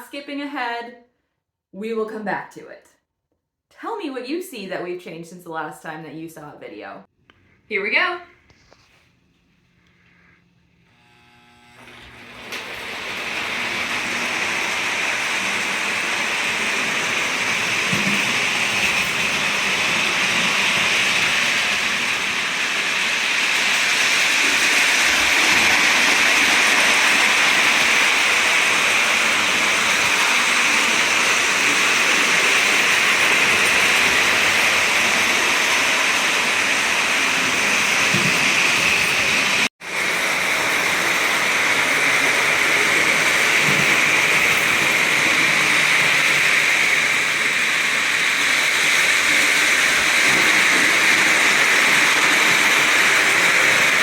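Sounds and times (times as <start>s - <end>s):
model train running: 11.0s - 54.0s.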